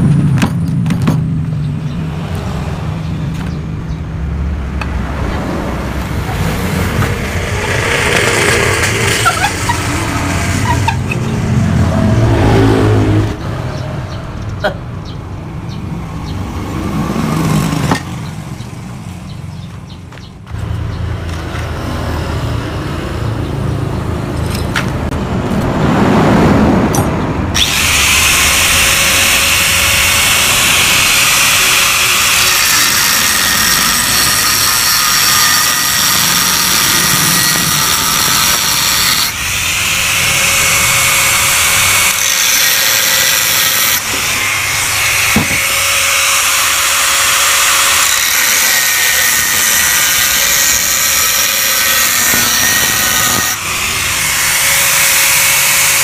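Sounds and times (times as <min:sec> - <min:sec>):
angle grinder cutting metal: 0:06.0 - 0:14.2, 0:27.0 - 0:56.0.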